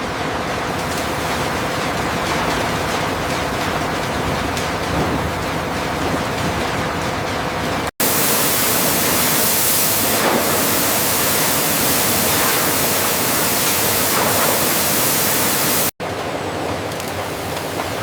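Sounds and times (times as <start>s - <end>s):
loud rushing noise: 8.0s - 15.9s.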